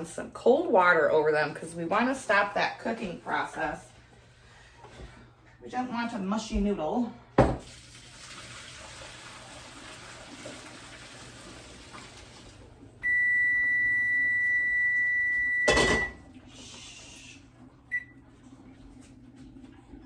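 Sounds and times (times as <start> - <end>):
faint running water: 0.0 - 20.0
electronic appliance beep: 13.0 - 16.2, 17.9 - 18.2.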